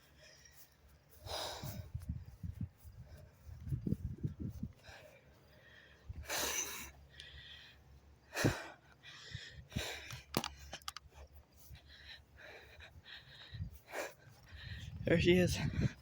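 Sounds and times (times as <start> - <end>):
person breathing close: 0.0 - 4.0, 4.7 - 15.0
small clicks: 10.0 - 11.2.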